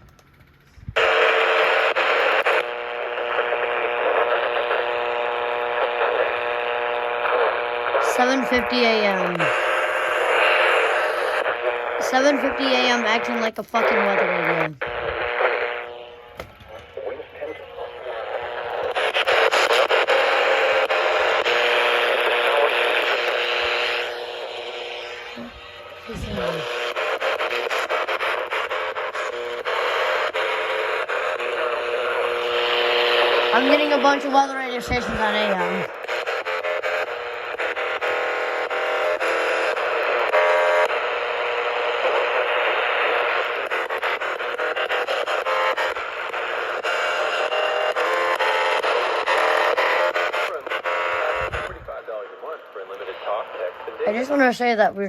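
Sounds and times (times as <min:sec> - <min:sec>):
faint steady tones: 0:00.0 - 0:55.0
radio static hiss: 0:00.5 - 0:55.0.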